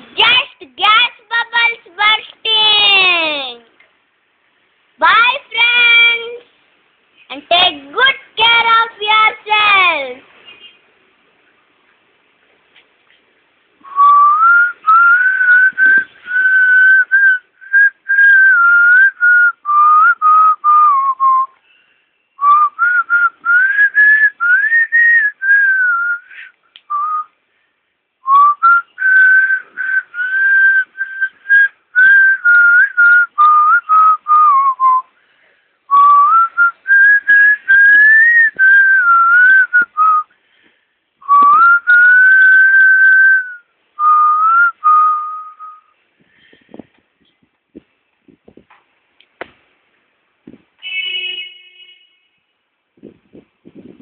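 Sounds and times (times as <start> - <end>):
person whistling a tune: 13.8 - 21.6, 22.4 - 27.4, 28.3 - 35.1, 35.9 - 40.3, 41.2 - 46.0.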